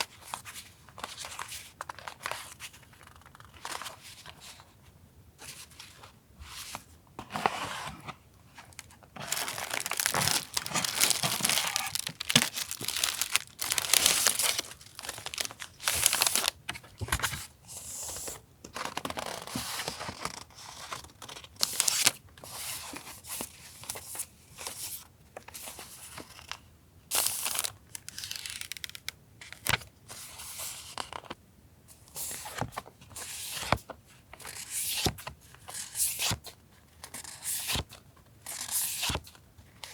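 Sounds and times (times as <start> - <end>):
packaging rustling and crinkling: 8.5 - 17.4, 27.1 - 29.8.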